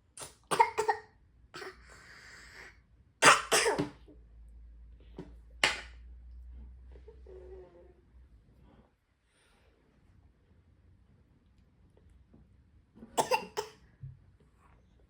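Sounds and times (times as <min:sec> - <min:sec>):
toddler coughing: 0:00.2 - 0:02.0, 0:03.2 - 0:04.0, 0:13.2 - 0:13.8.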